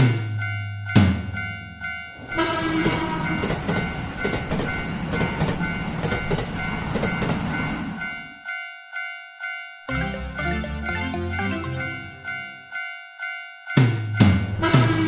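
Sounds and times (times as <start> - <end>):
railroad crossing bell ringing: 0.0 - 15.0
train wheels clacking over rails: 2.2 - 8.3.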